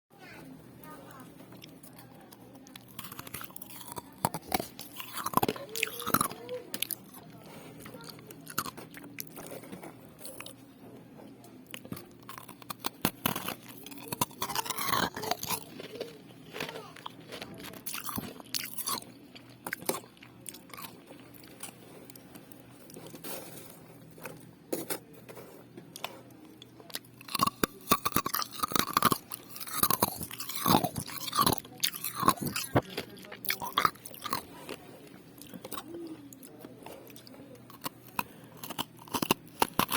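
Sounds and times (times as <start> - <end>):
crunching shaved ice: 0.2 - 10.6, 11.7 - 39.9.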